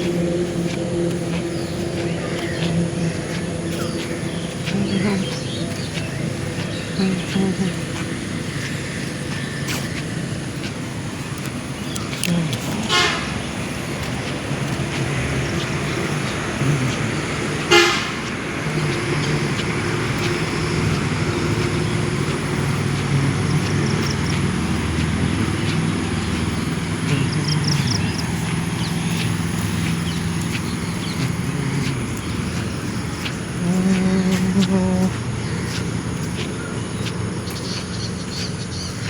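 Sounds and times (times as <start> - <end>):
road traffic hum: 0.0 - 39.0
car horn toot: 12.8 - 13.4, 17.6 - 18.2.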